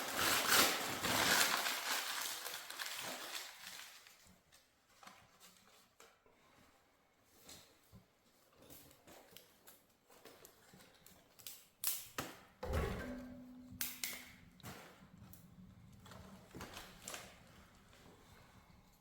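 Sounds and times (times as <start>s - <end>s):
firewood and metal clatter: 12.6s - 18.4s.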